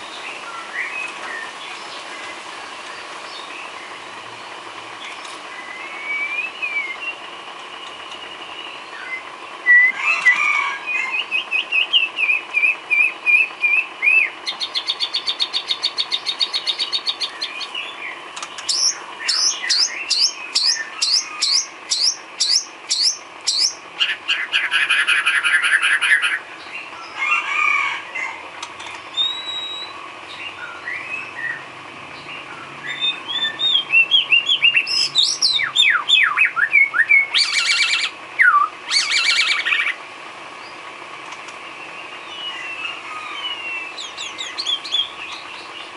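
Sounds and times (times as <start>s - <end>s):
bird singing: 0.0s - 45.9s.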